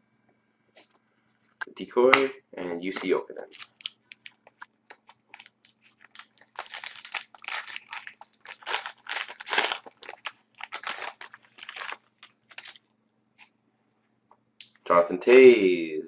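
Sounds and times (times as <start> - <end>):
foil wrapper crinkling: 3.4 - 12.8.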